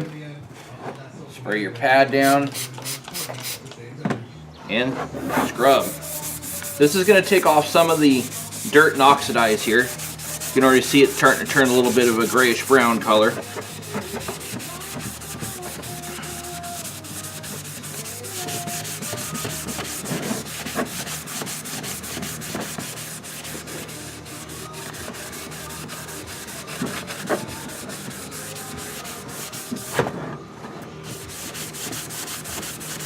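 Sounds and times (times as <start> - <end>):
scouring pad scrubbing plastic: 5.2 - 30.1, 31.1 - 33.0.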